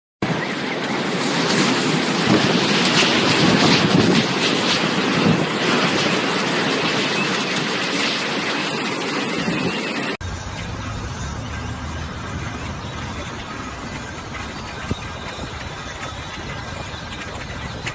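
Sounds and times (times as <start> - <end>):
storm wind: 0.2 - 10.2.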